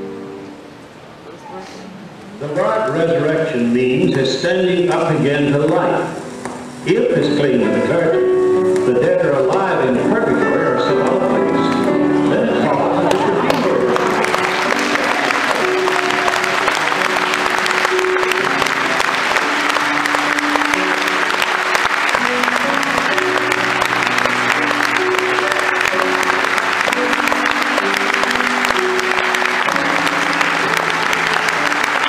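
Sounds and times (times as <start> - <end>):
audience applauding: 12.5 - 32.0.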